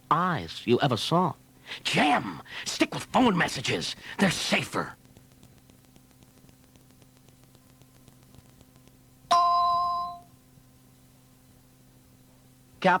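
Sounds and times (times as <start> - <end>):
faint tape hum: 0.0 - 13.0.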